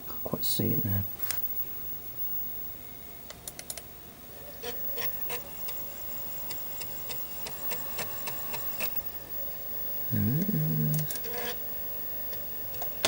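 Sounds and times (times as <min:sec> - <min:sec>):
floppy drive motor humming: 0:04.3 - 0:13.0.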